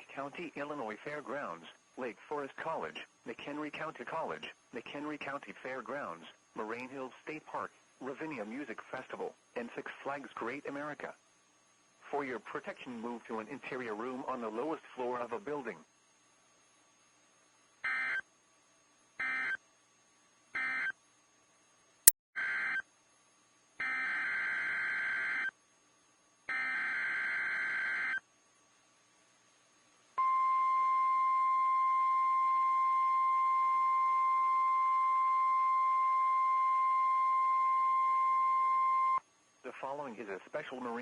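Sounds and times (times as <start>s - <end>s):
steady warning alarm tone: 19.2s - 19.6s, 20.6s - 20.9s, 23.8s - 25.5s, 26.5s - 28.2s, 30.2s - 39.2s.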